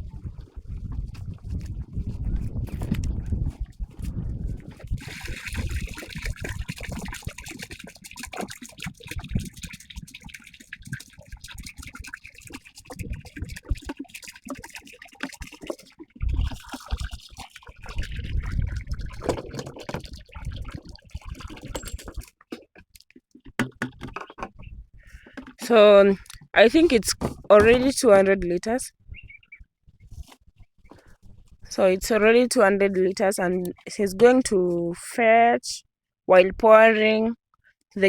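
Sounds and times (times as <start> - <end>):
water pouring into a container: 4.7 - 22.6.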